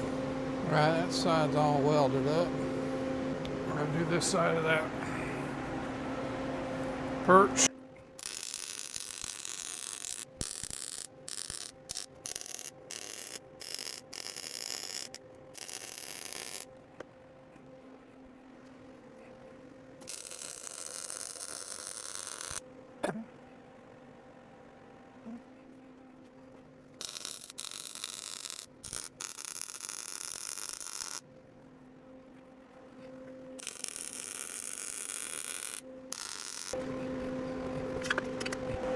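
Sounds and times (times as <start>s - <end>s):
faint steady hum: 0.0s - 38.9s
welding arc crackling: 8.2s - 16.7s, 20.0s - 22.6s, 27.0s - 31.2s, 33.6s - 36.8s
low hum: 31.2s - 38.9s.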